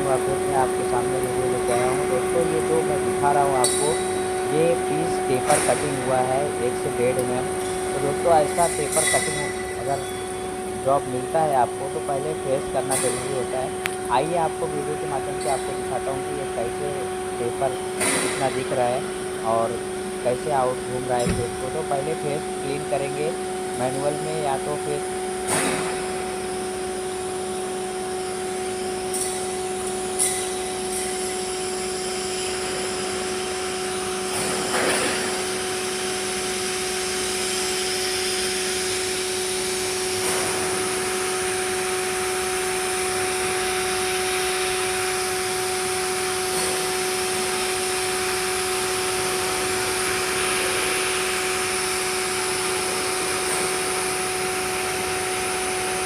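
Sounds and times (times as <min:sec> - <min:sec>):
lathe whine over hiss: 0:30.4 - 0:56.0.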